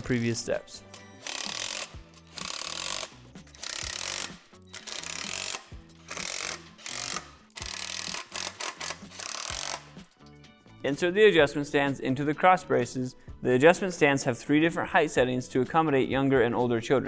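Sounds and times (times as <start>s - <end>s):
power driver tightening bolts: 0.0s - 10.2s
background music: 0.0s - 17.0s.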